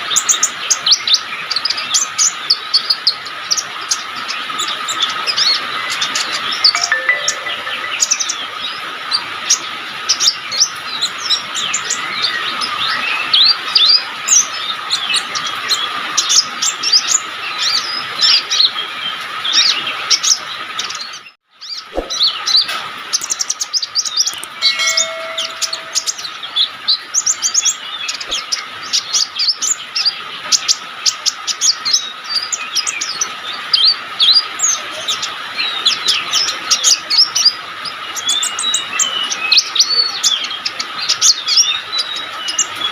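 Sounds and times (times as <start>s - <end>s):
bird singing: 24.3s - 26.4s.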